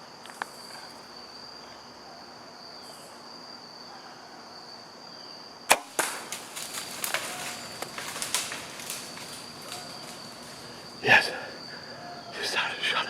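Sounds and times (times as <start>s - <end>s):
crickets trilling: 0.0s - 13.0s
bow shot snap: 5.7s - 6.4s
deer crashing through dry leaves: 5.7s - 10.9s.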